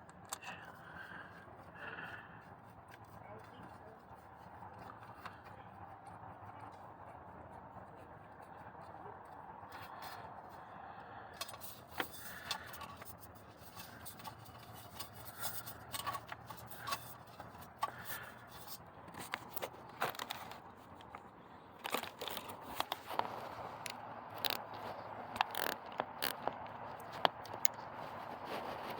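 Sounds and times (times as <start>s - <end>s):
small parts and tools clicking: 11.4s - 21.2s, 21.8s - 27.8s.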